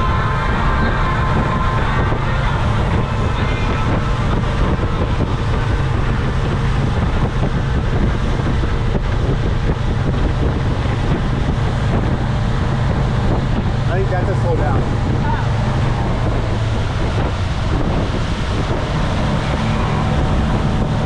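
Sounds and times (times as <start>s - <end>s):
motorboat running: 0.0s - 21.0s
wind buffeting microphone: 0.0s - 21.0s.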